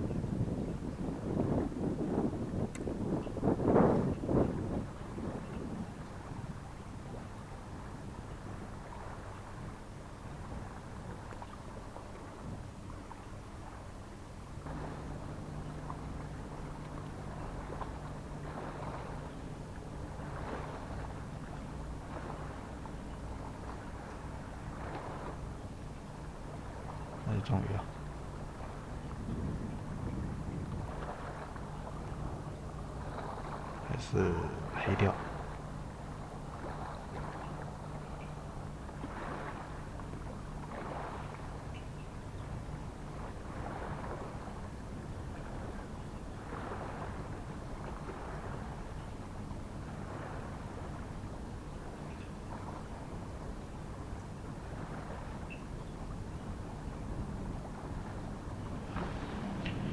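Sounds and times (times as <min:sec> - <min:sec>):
wind noise: 0:00.0 - 0:11.4, 0:14.6 - 0:38.0, 0:56.2 - 0:59.9
boat engine humming: 0:00.0 - 0:59.9
sea waves: 0:00.0 - 0:59.9.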